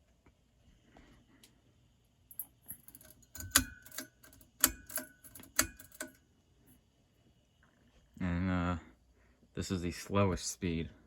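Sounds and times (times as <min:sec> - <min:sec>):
ceiling fan control clicks: 0:02.3 - 0:06.2.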